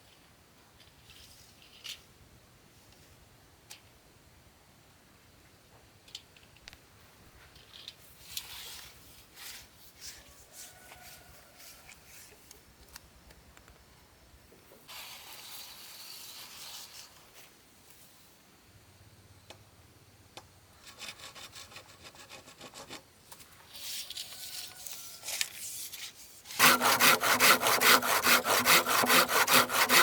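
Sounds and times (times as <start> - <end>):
scraping and rubbing: 7.5 - 12.5, 14.9 - 17.5, 23.7 - 30.0
rasping stroke: 26.5 - 30.0.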